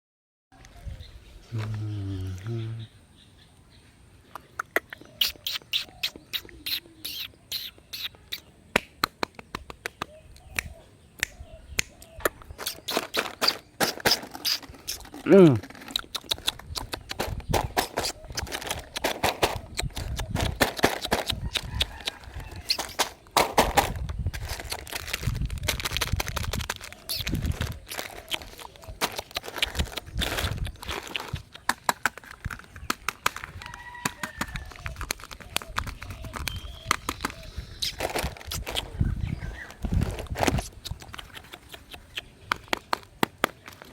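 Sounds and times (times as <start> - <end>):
wrapper clicking: 22.7 - 37.2
wrapper crinkling: 23.8 - 36.7.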